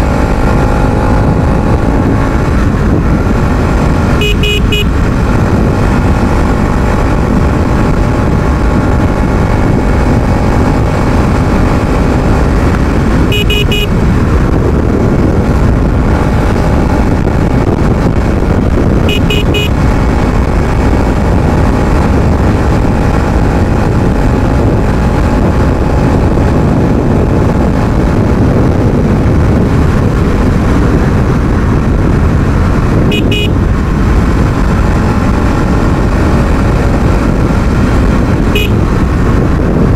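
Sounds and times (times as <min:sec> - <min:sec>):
motorcycle engine running: 0:00.0 - 0:39.9
horn short beeps: 0:04.2 - 0:04.9, 0:13.3 - 0:13.9, 0:19.0 - 0:19.8, 0:33.1 - 0:33.6, 0:38.6 - 0:38.8.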